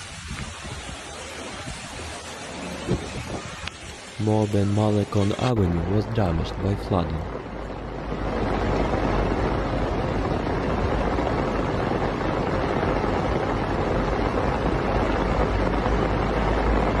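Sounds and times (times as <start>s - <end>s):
strong wind: 0.0s - 17.0s
water rushing: 0.0s - 17.0s
wind buffeting microphone: 0.0s - 17.0s.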